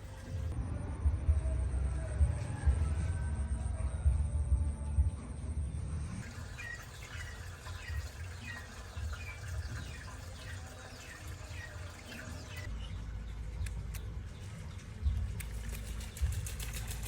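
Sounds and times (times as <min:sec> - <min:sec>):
low rumble: 0:00.0 - 0:06.2.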